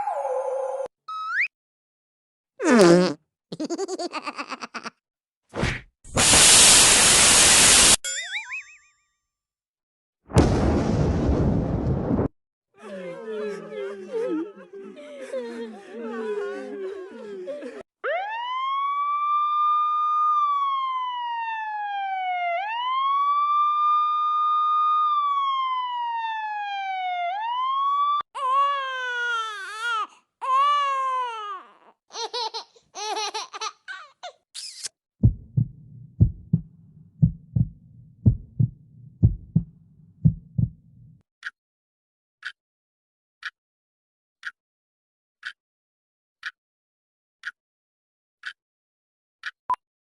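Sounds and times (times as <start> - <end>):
wailing siren: 18.0 - 28.3
short low thumps: 35.2 - 40.8.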